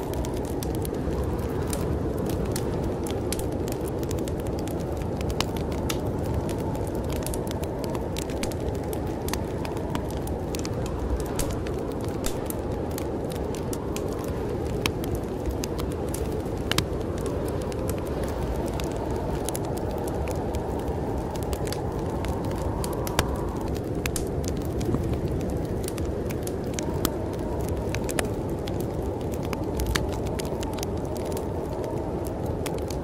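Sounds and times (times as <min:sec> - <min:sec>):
fireplace crackling and popping: 0:00.0 - 0:33.0
snowstorm wind rushing: 0:00.0 - 0:33.0.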